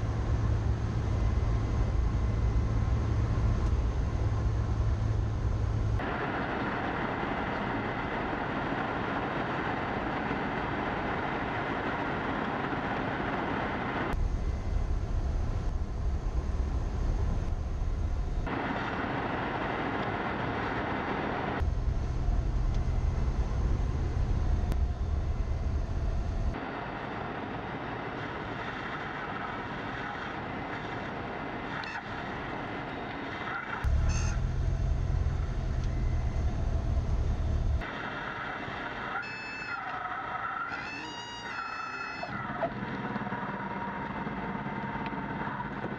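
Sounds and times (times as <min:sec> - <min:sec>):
heavy low rumble: 0:00.0 - 0:31.1, 0:33.8 - 0:38.9
aircraft engine and propeller: 0:00.0 - 0:39.1, 0:42.4 - 0:45.9.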